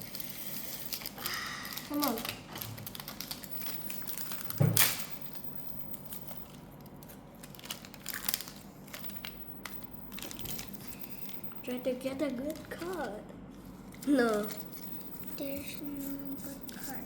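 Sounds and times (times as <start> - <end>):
foil pack ripping: 0.0 - 5.0, 6.9 - 9.4
wrapper crinkling: 0.0 - 13.2.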